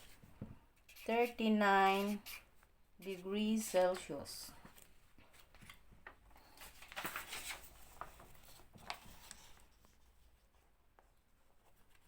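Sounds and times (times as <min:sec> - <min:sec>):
handwriting scratching: 0:00.9 - 0:02.5.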